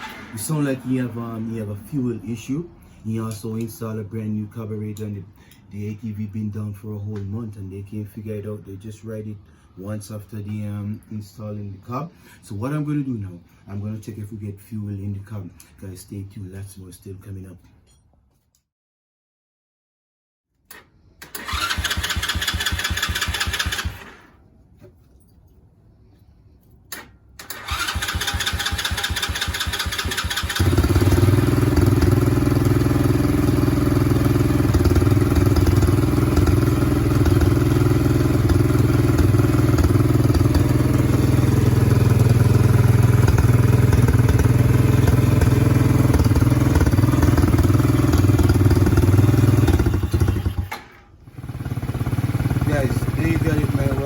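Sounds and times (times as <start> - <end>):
engine cranking on electric starter: 0.0 - 1.7, 20.7 - 24.4, 26.9 - 54.0
engine idling: 27.6 - 50.7, 51.3 - 54.0.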